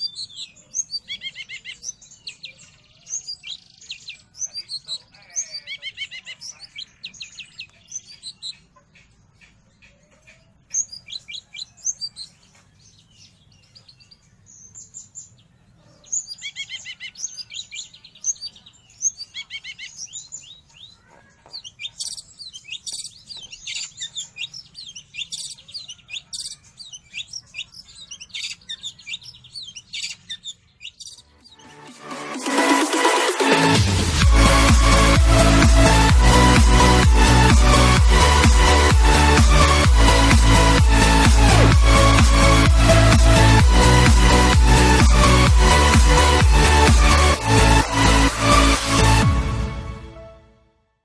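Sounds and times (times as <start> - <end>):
bird chirping and twittering: 0.0 - 32.8.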